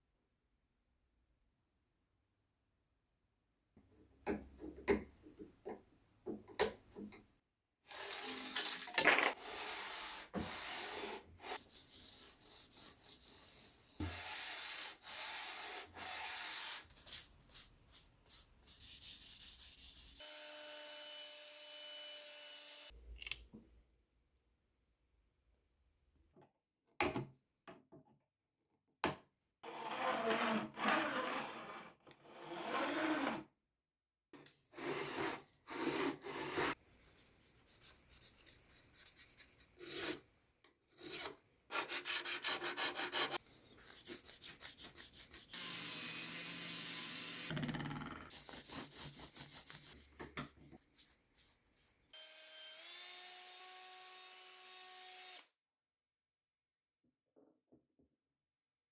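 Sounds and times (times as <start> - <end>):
files rasping on metal: 41.0 - 45.6
sawing: 41.0 - 47.6, 48.3 - 50.2.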